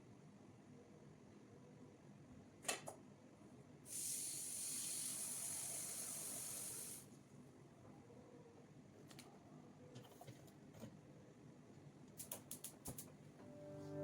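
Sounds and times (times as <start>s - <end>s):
steady hiss: 3.9s - 7.1s.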